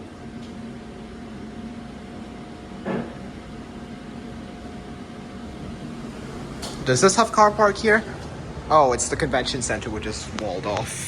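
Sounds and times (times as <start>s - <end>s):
lift car hum: 5.0s - 10.8s.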